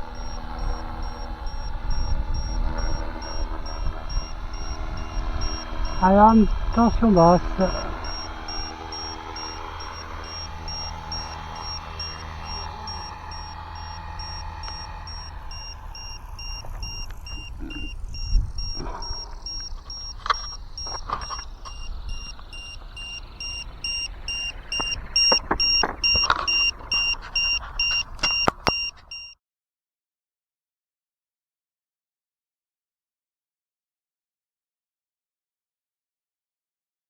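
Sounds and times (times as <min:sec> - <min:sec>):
rc helicopter motor and rotor: 0:00.0 - 0:29.3
high-pitched buzzer beeping: 0:00.0 - 0:29.4
sharp clicks and knocks: 0:08.0 - 0:29.3.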